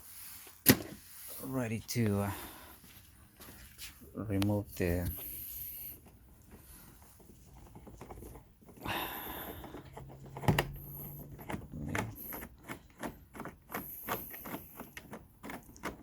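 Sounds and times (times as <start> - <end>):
plastic trim scraping: 6.0 - 16.0.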